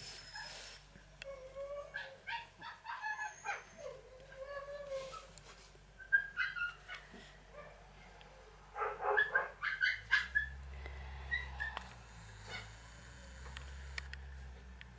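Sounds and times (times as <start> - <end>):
puppy yipping and whimpering: 1.3 - 5.3, 6.0 - 7.7, 8.8 - 10.6, 11.3 - 12.8.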